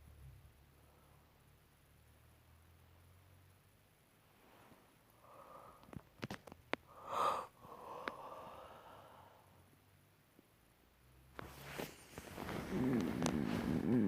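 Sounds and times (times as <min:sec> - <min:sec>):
person breathing heavily: 0:04.4 - 0:06.0, 0:06.8 - 0:09.7.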